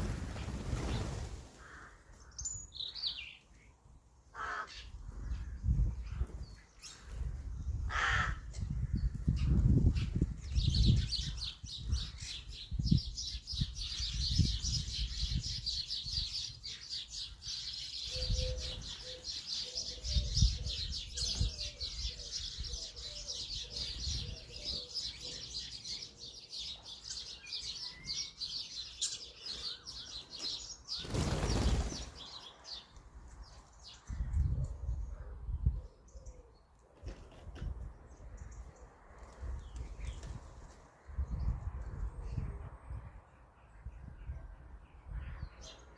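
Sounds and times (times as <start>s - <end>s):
wings flapping: 0.0s - 1.8s, 31.0s - 32.3s
burst of wingbeats: 0.0s - 1.9s, 31.0s - 32.2s
garden birds chirping: 0.0s - 45.9s.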